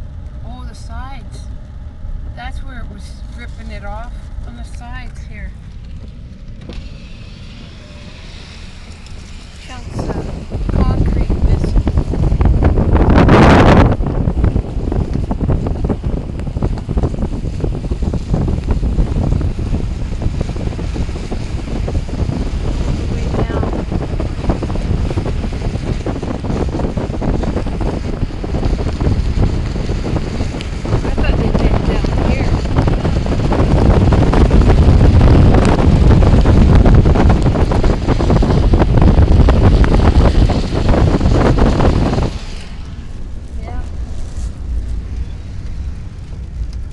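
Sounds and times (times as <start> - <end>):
wind buffeting microphone: 0.0 - 46.9
crackles and pops: 13.9 - 20.1, 25.3 - 46.9.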